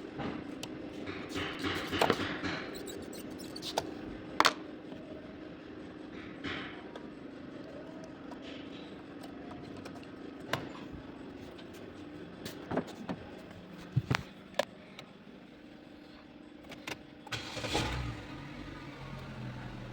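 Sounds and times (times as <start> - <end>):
sharp clicks and knocks: 0.2 - 4.6
car engine cranking and idling: 17.3 - 19.9.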